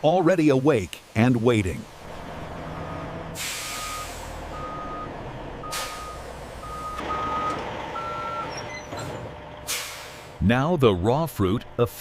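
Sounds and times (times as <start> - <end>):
low engine rumble: 1.8 - 12.0
truck reversing alarm beeping: 2.6 - 10.3
air hiss bursts: 3.4 - 4.4, 5.7 - 6.1, 9.7 - 10.3.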